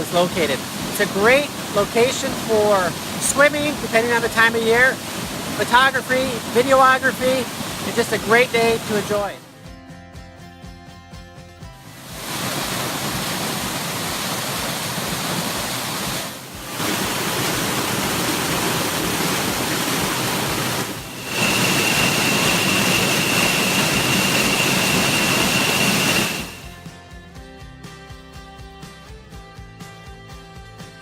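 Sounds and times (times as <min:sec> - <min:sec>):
waterfall rushing: 0:00.0 - 0:09.4, 0:12.0 - 0:26.7
thin high tone: 0:16.6 - 0:26.8.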